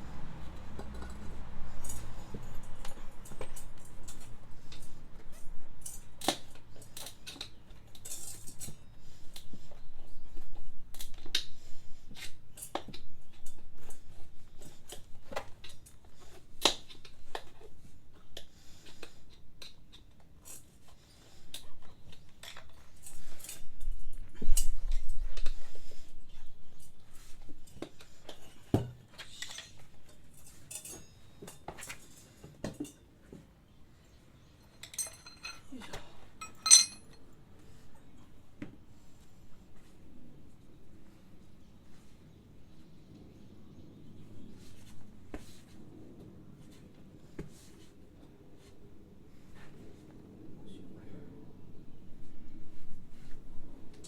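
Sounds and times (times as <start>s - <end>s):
tools and metal parts clinking: 0.8s - 8.8s, 29.2s - 33.0s, 34.6s - 37.2s.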